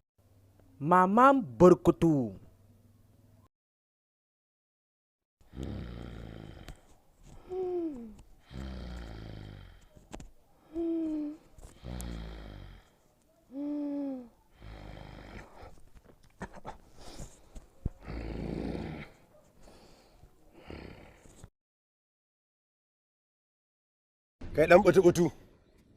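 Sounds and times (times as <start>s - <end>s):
cartoon rattling snore: 5.5s - 7.5s, 8.4s - 9.9s, 11.3s - 13.0s, 14.6s - 15.8s, 18.0s - 19.2s, 20.6s - 21.5s.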